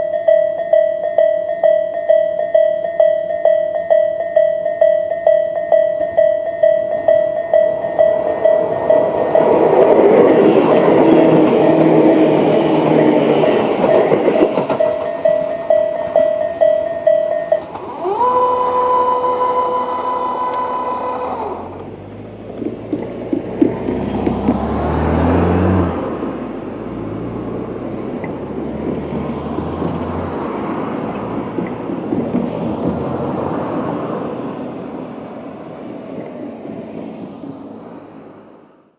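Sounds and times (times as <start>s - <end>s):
level-crossing bell: 0.0s - 18.4s
steady rushing noise: 5.4s - 19.3s
vehicle engine rumble: 5.4s - 38.7s
barrier motors whining: 6.0s - 24.8s.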